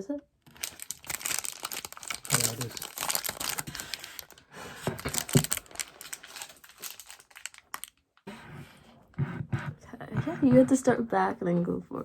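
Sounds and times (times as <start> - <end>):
plastic wrapper crinkling: 0.4 - 8.2.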